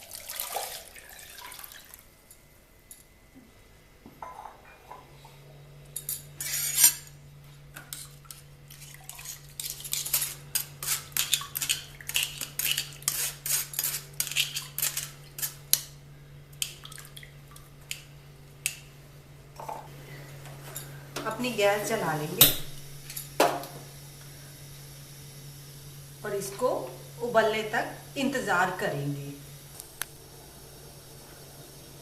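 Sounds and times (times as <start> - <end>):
steady low hum: 0.9 - 32.0
metal utensils clinking and scraping: 6.0 - 7.1, 8.8 - 15.6.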